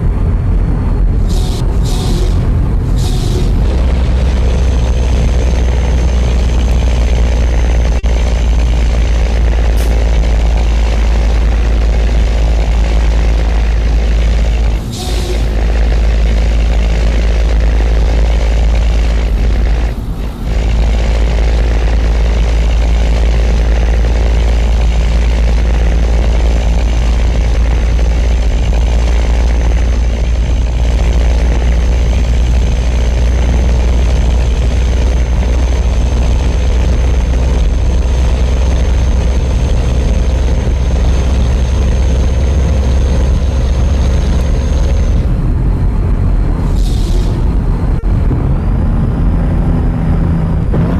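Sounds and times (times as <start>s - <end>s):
truck engine deep drone: 0.0s - 50.9s.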